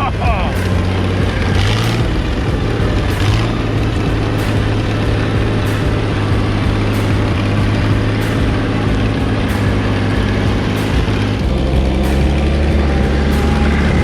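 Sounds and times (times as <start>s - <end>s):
tractor engine running: 0.0s - 14.0s.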